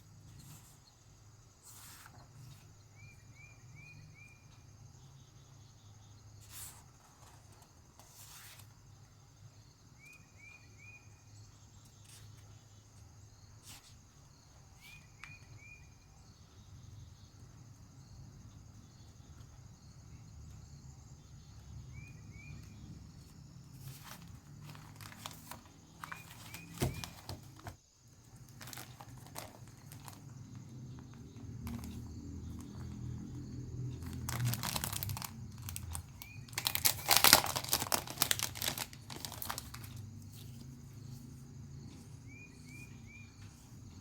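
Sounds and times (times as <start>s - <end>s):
small chirps: 9.9s - 16.6s, 28.3s - 44.0s
packaging and paper rustling: 23.7s - 32.9s, 34.0s - 40.8s.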